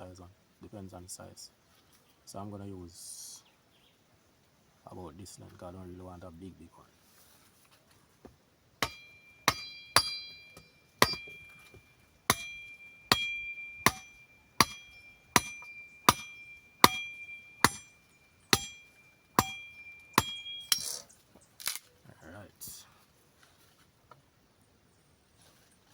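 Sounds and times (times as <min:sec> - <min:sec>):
metallic ring of blade: 0:08.8 - 0:11.6, 0:12.3 - 0:21.1.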